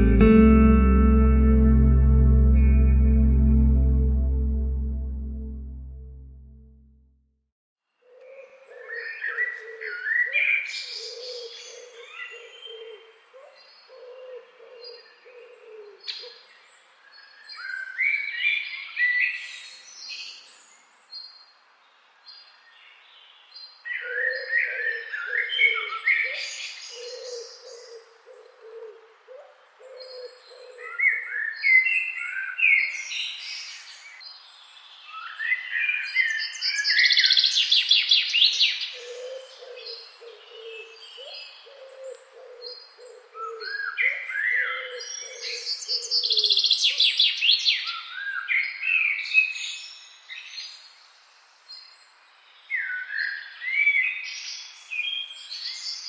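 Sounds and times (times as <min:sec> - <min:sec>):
thin high bird note: 0:00.0 - 0:06.9.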